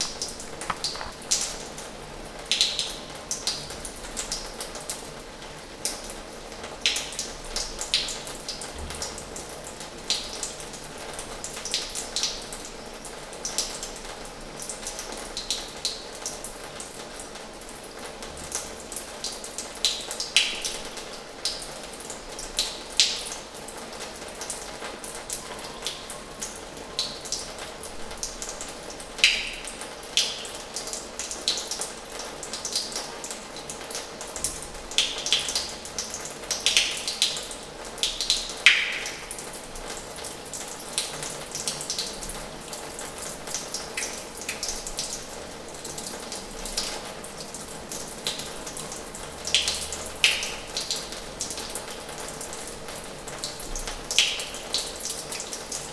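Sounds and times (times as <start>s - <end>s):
water splashes and plops: 0.0s - 1.7s.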